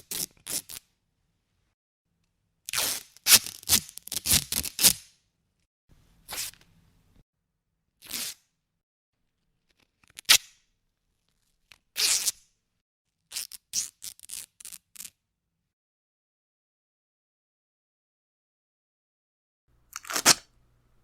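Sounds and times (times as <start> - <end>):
adhesive tape ripping: 2.7 - 5.1, 13.3 - 15.1, 20.0 - 20.4.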